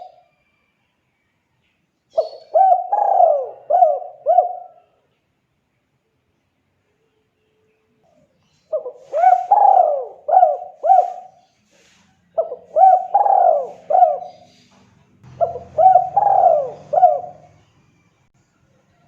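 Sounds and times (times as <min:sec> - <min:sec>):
dove cooing: 0:02.1 - 0:05.0, 0:08.6 - 0:14.7, 0:15.3 - 0:17.7.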